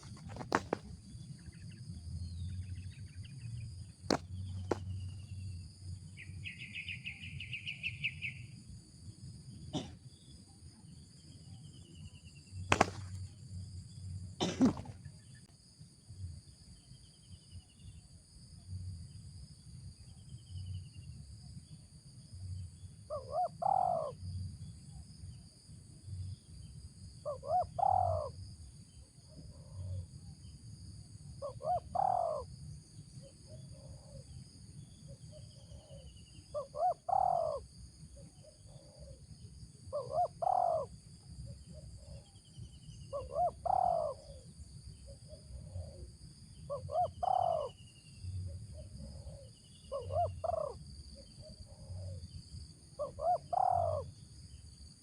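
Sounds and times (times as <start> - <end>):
dove cooing: 0.0 - 0.8, 12.7 - 13.2, 23.1 - 24.2, 27.3 - 28.3, 31.4 - 32.4, 35.7 - 37.6, 39.9 - 40.9, 43.1 - 44.4, 46.7 - 47.8, 48.7 - 52.2, 53.0 - 54.1.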